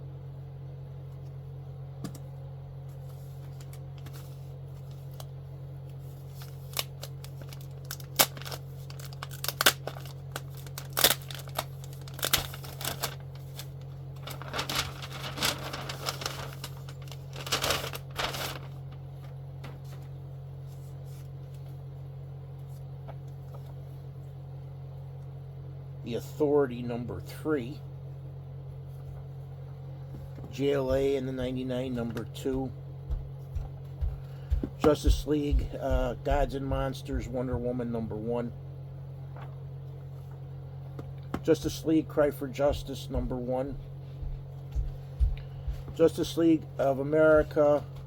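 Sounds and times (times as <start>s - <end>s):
steady low hum: 0.0s - 48.0s
comic book packaging crinkling: 6.0s - 20.0s.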